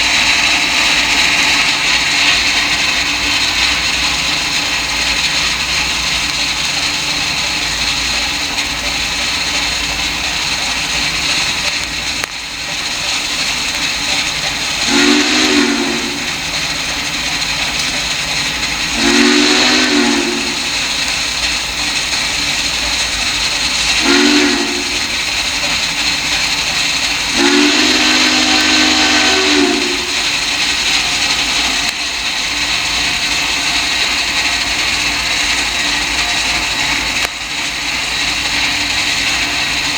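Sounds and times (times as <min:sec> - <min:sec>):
steady steam hiss: 0:00.0 - 0:39.9
steam whistle blasts: 0:14.7 - 0:16.8, 0:18.8 - 0:20.9, 0:24.0 - 0:25.5, 0:27.3 - 0:32.2.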